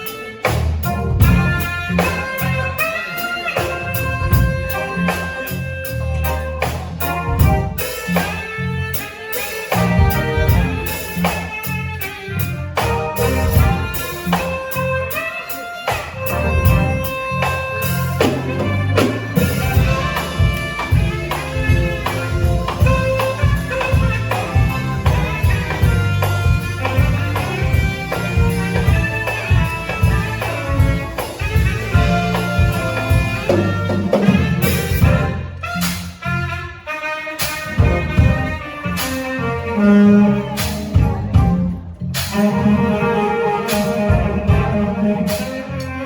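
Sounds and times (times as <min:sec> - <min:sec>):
instrumental band music: 0:00.0 - 0:46.0.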